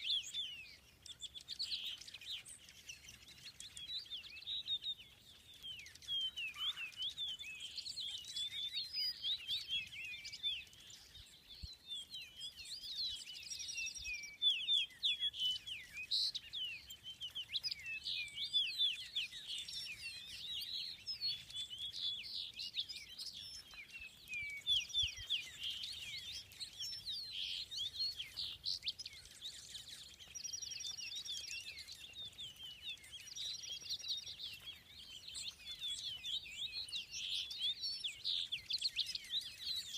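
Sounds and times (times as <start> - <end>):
songbirds chirping: 0.0 - 39.9
bird trills: 5.8 - 11.2.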